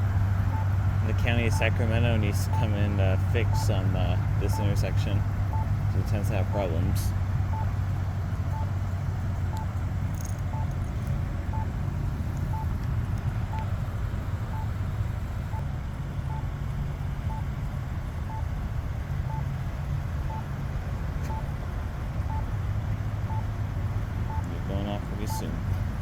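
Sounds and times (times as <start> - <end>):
low traffic rumble: 0.0 - 26.0
pedestrian signal beeps: 0.2 - 7.8, 8.5 - 13.8, 14.4 - 14.8, 16.2 - 16.6, 17.2 - 17.6, 18.2 - 18.5, 19.2 - 19.6, 20.2 - 20.6, 21.2 - 21.6, 22.2 - 22.6, 23.2 - 23.5, 24.2 - 26.0.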